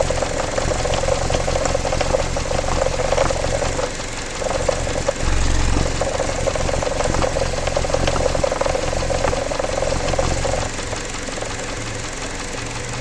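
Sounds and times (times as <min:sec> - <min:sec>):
engine running with knocking: 0:00.0 - 0:13.0.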